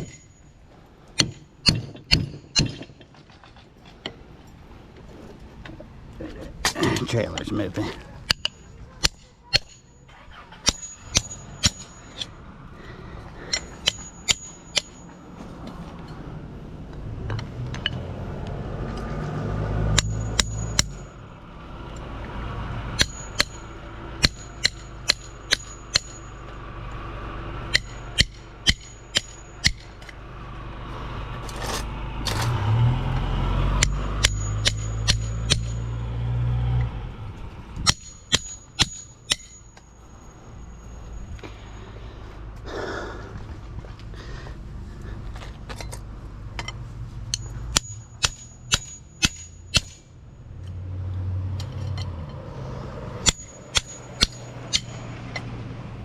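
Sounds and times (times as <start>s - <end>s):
hammer striking metal housing: 10.6s - 12.3s, 13.5s - 15.2s, 19.9s - 21.1s, 23.0s - 26.4s, 33.8s - 36.0s, 37.8s - 39.9s, 47.3s - 50.1s, 53.2s - 55.0s
low rumble: 34.8s - 39.2s.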